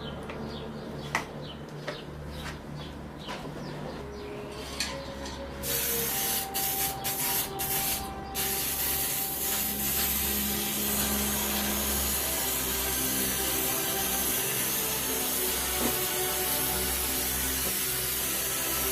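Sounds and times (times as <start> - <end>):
spray can hissing: 5.6 - 18.9.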